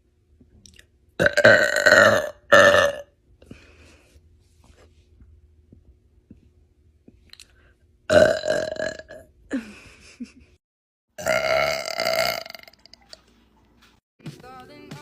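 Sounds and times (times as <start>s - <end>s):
woman burping loudly: 1.2s - 3.1s, 8.1s - 9.3s, 11.2s - 12.8s.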